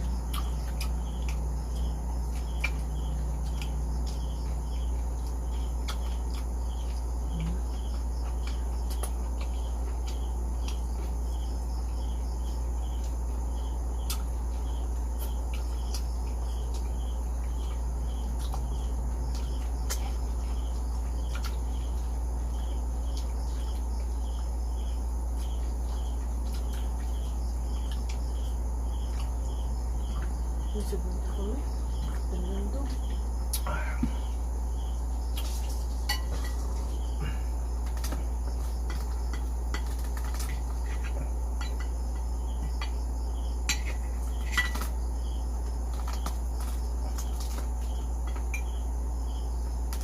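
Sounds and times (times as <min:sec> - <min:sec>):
crickets chirping: 0:00.0 - 0:50.0
low hum: 0:00.0 - 0:50.0
crunching of crispy food: 0:33.4 - 0:42.5.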